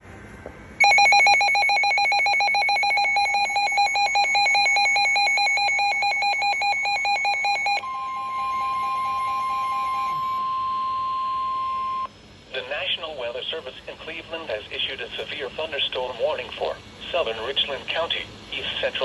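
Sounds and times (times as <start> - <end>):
pulsing warbling electronic alarm: 0.8 - 12.1
steady single-pitch alert tone: 0.8 - 12.2.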